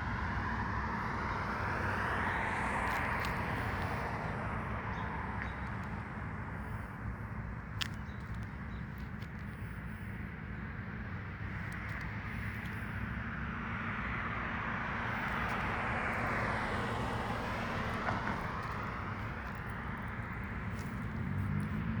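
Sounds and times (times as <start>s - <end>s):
vehicle passing: 13.8s - 22.0s.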